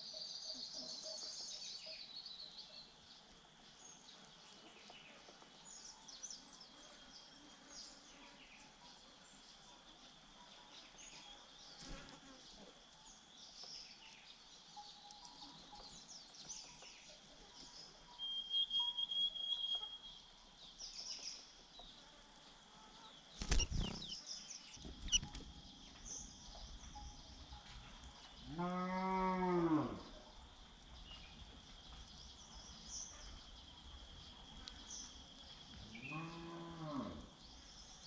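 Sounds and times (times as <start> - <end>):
high bird chirps: 18.1 - 20.1, 23.4 - 25.4.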